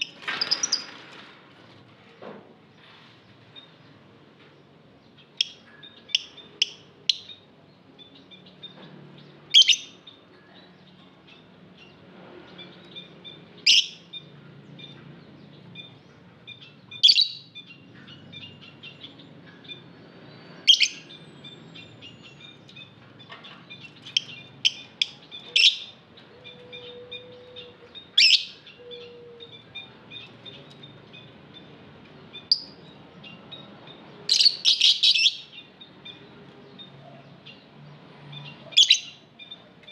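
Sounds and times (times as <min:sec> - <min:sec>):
shrill bird calls: 0:16.9 - 0:17.6, 0:20.6 - 0:21.2, 0:24.1 - 0:30.4, 0:34.3 - 0:35.7.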